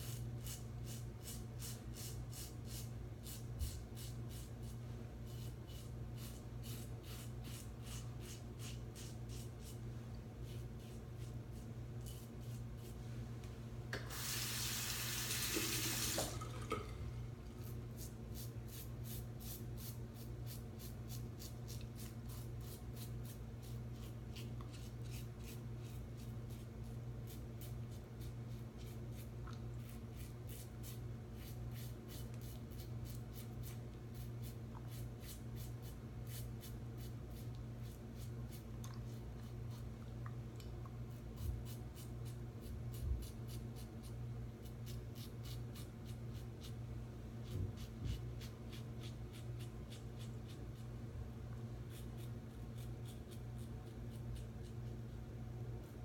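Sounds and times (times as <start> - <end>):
steady low hum: 0.0 - 56.0
tap running: 13.9 - 17.0.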